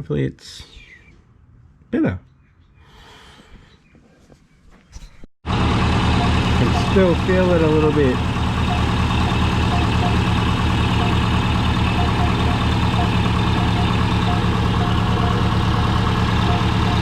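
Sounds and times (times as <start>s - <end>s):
car engine idling: 5.5s - 17.0s.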